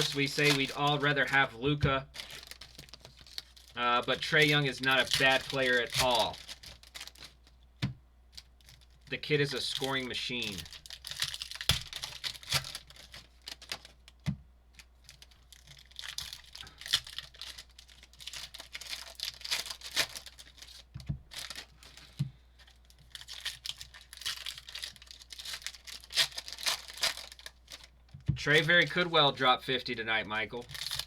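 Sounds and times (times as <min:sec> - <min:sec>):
card wrappers crinkling and tearing: 0:00.0 - 0:07.6, 0:08.3 - 0:31.0.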